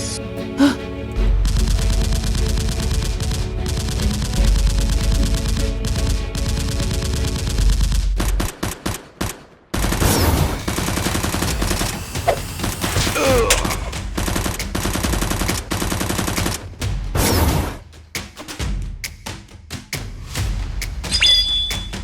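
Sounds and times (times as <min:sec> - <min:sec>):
automatic gunfire bursts: 0:08.2 - 0:16.6.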